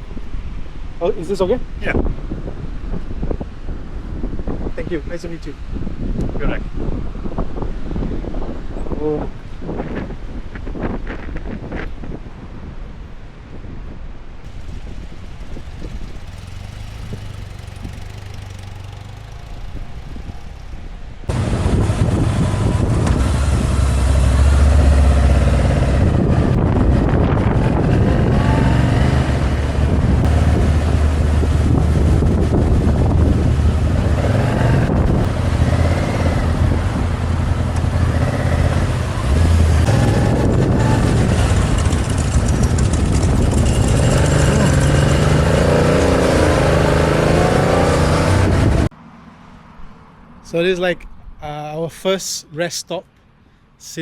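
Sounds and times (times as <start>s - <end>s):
wind noise: 0.0s - 49.0s
motorcycle engine running: 14.5s - 24.6s, 25.5s - 47.3s.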